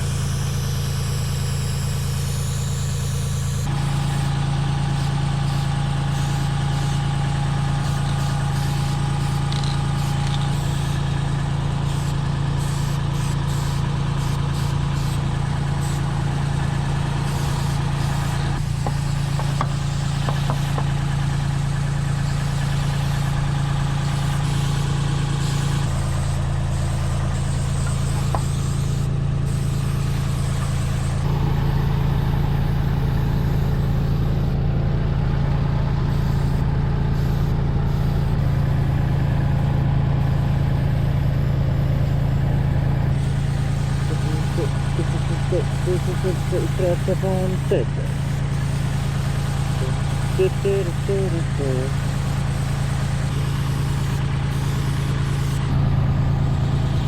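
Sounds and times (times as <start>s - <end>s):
engine droning: 0.0s - 57.0s.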